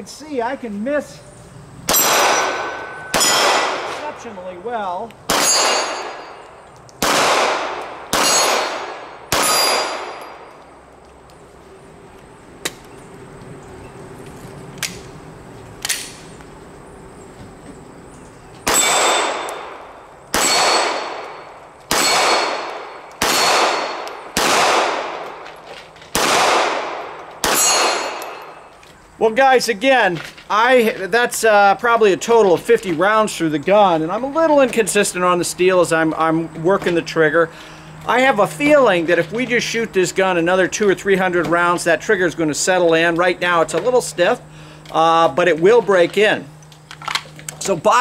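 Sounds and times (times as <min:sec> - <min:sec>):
pistol shots: 0:01.9 - 0:04.2, 0:05.3 - 0:10.5, 0:18.6 - 0:25.4, 0:26.1 - 0:28.6
steel plate ringing: 0:05.4 - 0:06.4, 0:27.5 - 0:28.6.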